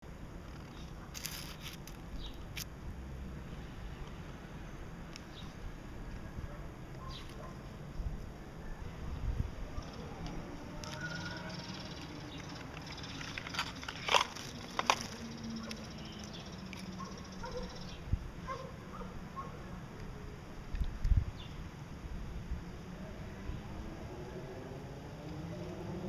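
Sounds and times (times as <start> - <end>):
finches chirping: 9.8 - 14.0, 15.0 - 18.6.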